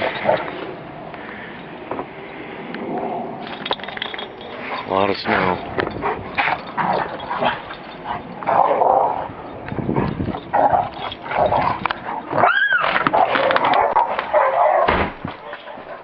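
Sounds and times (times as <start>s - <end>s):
dog barking: 13.2s - 16.0s.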